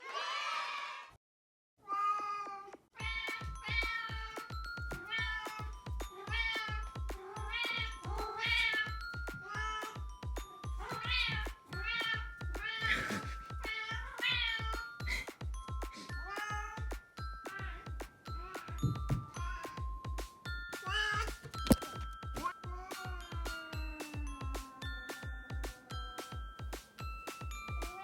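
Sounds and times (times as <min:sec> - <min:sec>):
background music with steady beat: 0:03.0 - 0:28.0
cat meowing: 0:07.4 - 0:08.9, 0:10.8 - 0:14.8.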